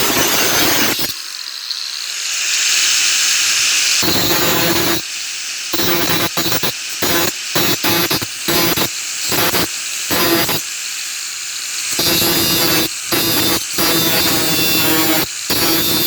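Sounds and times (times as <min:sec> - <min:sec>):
grinder wheel grinding steel: 0:11.9 - 0:16.0.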